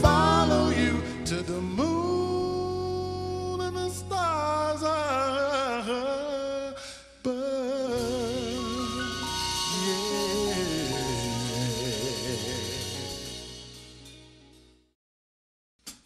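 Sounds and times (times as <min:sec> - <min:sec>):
live band music: 0:00.0 - 0:03.6, 0:08.0 - 0:14.8
person singing with vibrato: 0:00.0 - 0:13.5.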